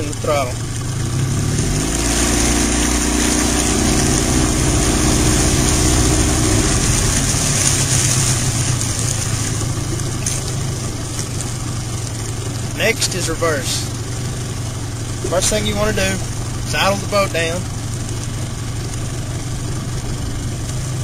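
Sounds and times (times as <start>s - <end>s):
outboard motor running: 0.0s - 21.0s
wind: 0.0s - 21.0s
water hiss: 1.4s - 14.2s.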